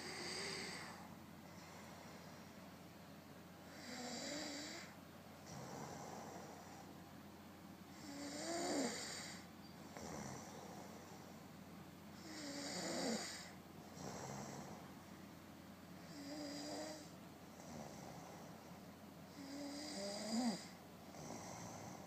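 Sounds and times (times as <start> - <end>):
person snoring: 0.0 - 1.1, 3.7 - 4.9, 8.0 - 11.0, 12.2 - 14.8, 16.1 - 18.4, 19.3 - 22.0
soft breath out: 0.0 - 2.8.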